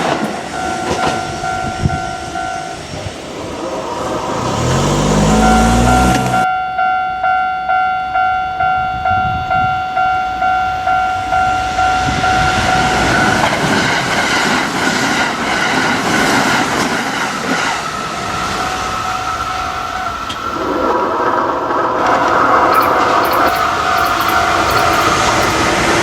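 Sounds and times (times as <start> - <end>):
train wheels clacking over rails: 0.0 - 5.3, 12.4 - 19.5, 20.2 - 26.0
level crossing bell ringing: 5.0 - 13.5, 22.7 - 26.0.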